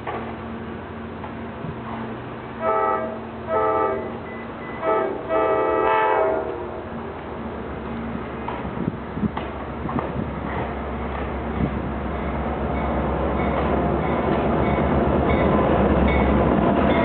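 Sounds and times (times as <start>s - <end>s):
locomotive horn blasts: 2.6s - 6.9s.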